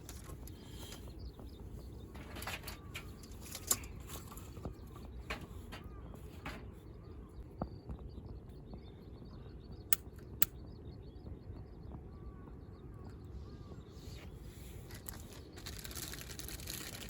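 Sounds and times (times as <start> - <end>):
faint bird calls: 0.0 - 16.2
sharp clicks: 9.9 - 10.6.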